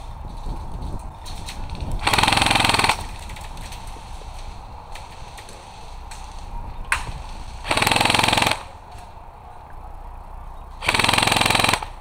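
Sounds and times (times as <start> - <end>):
sharp crack: 1.4 - 9.2
airsoft gun firing bursts: 2.0 - 3.2, 7.6 - 8.8, 10.8 - 12.0.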